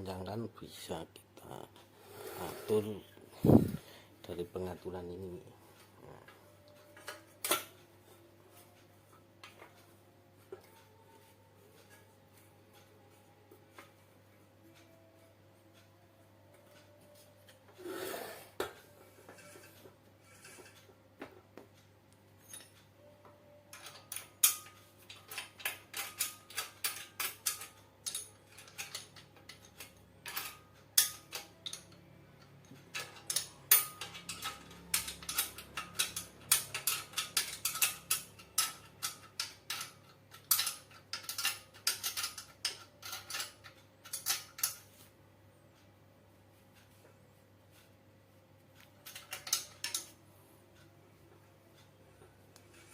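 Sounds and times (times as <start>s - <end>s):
sharp metallic clicks and clinks: 22.4s - 22.8s, 23.7s - 44.9s, 48.9s - 50.2s.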